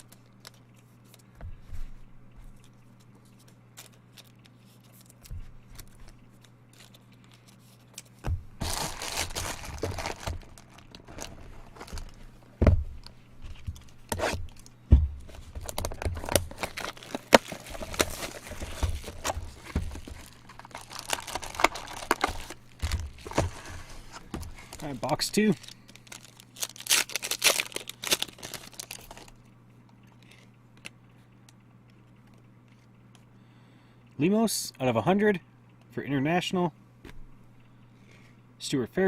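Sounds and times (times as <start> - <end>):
plastic wrapping tearing and crinkling: 3.8 - 12.3, 15.3 - 29.4
box thumps: 8.2 - 24.8.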